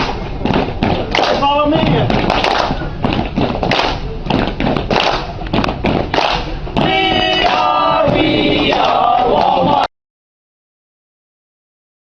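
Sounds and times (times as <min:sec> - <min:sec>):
rhythmic thumps and claps: 0:00.0 - 0:09.9
choir-like chord of voices: 0:06.8 - 0:09.9.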